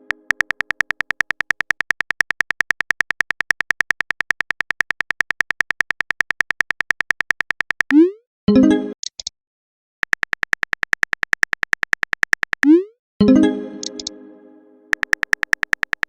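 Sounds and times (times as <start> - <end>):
phone keyboard typing clicks: 0.0 - 8.0, 10.0 - 12.8, 13.8 - 14.1, 14.9 - 16.0.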